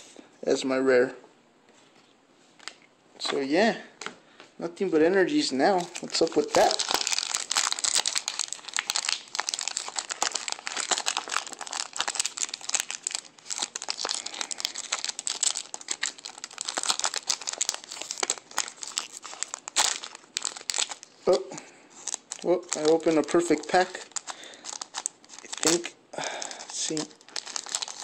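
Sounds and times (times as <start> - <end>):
foil wrapper crinkling: 5.7 - 28.0.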